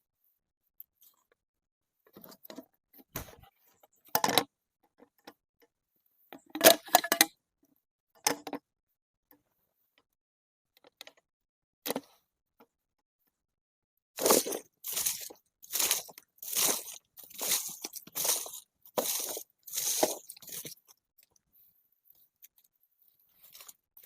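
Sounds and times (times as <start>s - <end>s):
small objects clinking and rustling: 14.2s - 20.9s, 23.3s - 23.8s.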